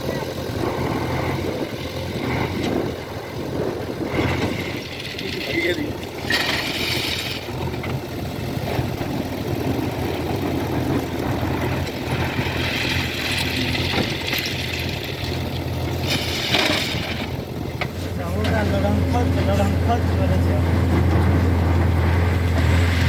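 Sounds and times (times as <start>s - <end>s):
diesel engine running: 0.0s - 23.0s
rushing noise: 16.0s - 23.0s.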